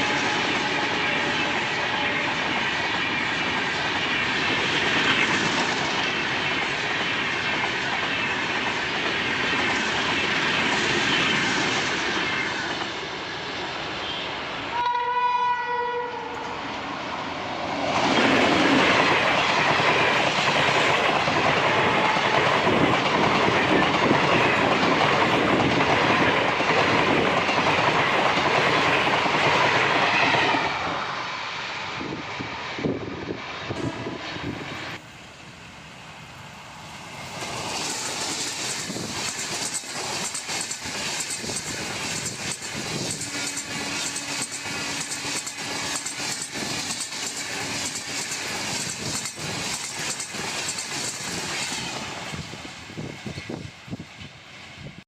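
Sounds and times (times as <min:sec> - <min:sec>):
train running noise: 0:00.0 - 0:55.0
train horn blast: 0:14.0 - 0:16.6, 0:33.8 - 0:34.6
wheels clicking over rail joints: 0:37.3 - 0:51.9.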